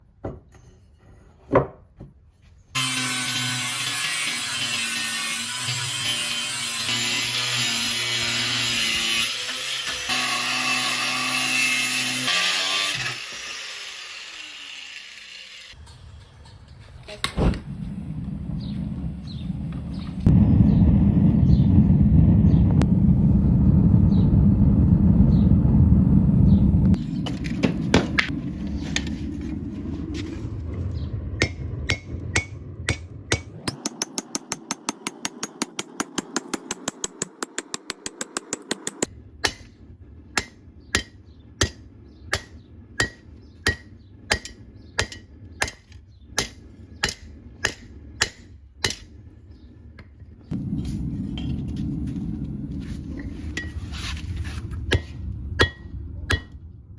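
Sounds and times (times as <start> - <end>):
steady low rumble: 15.8 - 38.2, 39.0 - 56.9
hammer on metal on anvil: 31.4 - 39.8, 40.4 - 49.1, 54.9 - 56.6.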